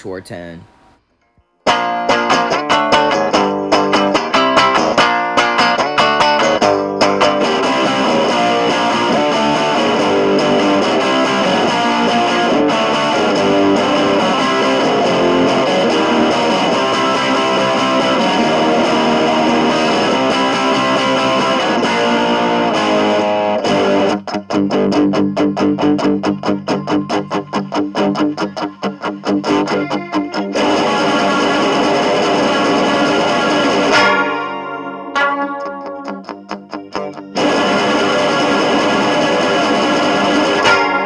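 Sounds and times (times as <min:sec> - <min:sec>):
distorted electric guitar: 0:01.7 - 0:41.0.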